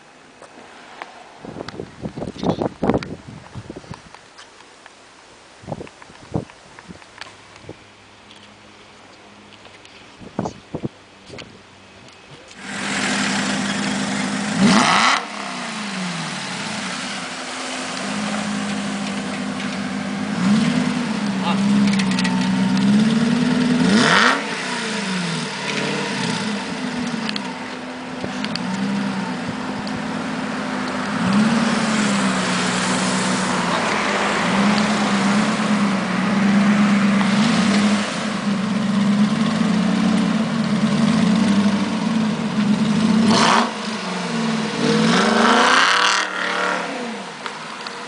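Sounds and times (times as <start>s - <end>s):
car engine revving: 12.5s - 48.0s.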